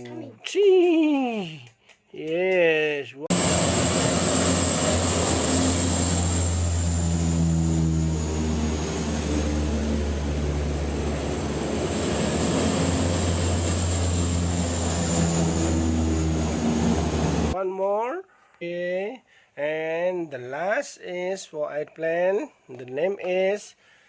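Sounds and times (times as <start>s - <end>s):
airplane engine drone: 3.3s - 17.6s.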